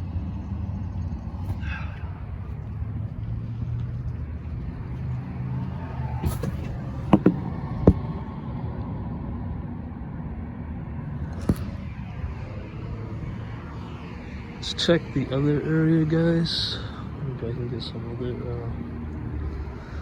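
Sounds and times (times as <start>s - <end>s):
road traffic rumble: 0.0s - 20.0s
sharp knocks: 6.3s - 8.0s.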